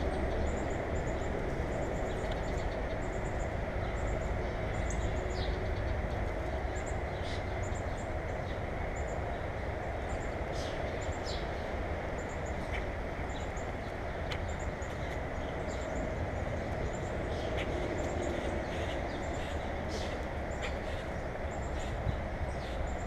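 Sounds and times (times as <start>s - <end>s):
small birds chipping: 0.0s - 23.0s.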